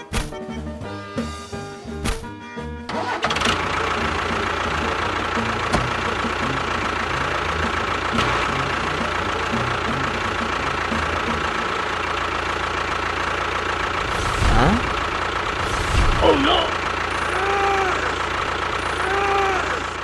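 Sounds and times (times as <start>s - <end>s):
music: 0.0s - 12.0s
motor whining: 2.9s - 20.0s.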